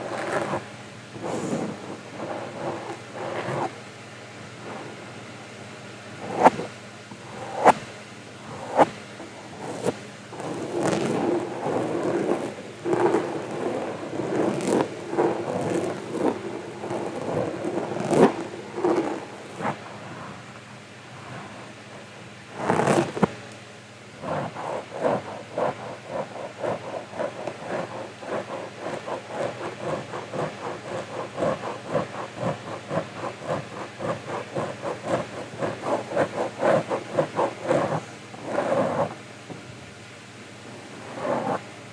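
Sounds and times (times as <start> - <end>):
rustling against microphone: 1.2 - 3.7, 6.2 - 7.9, 8.5 - 20.4, 22.6 - 23.5, 24.2 - 39.8, 40.9 - 41.7
short brushing strokes: 1.2 - 3.7, 6.2 - 20.4, 24.2 - 39.2, 40.9 - 41.7.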